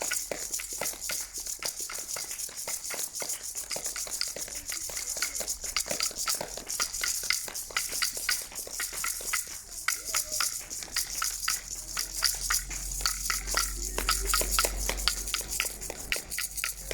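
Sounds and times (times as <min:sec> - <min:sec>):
crowd clapping: 0:12.2 - 0:16.9.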